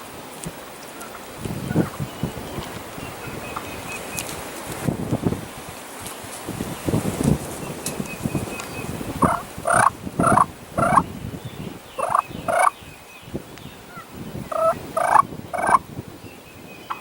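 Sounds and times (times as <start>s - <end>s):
wind on microphone: 0.0s - 17.0s
turkey calls: 9.2s - 11.0s, 12.0s - 12.8s, 13.9s - 15.8s.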